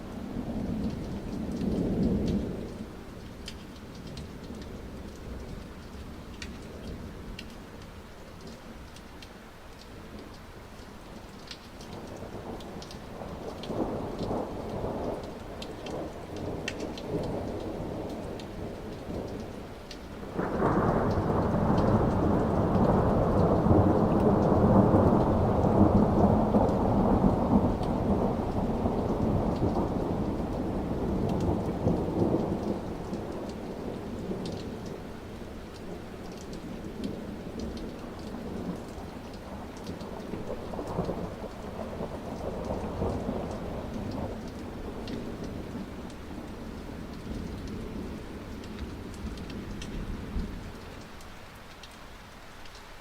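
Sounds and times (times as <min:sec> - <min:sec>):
rain pattering: 0:00.0 - 0:53.0
thunder rumbling: 0:20.2 - 0:50.8.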